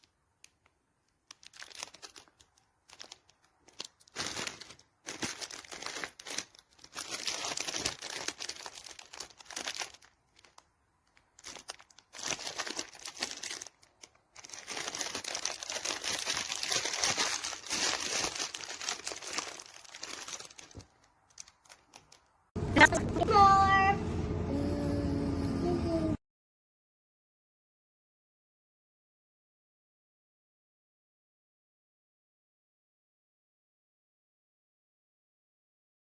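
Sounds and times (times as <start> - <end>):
packaging crinkling: 0.0 - 22.4.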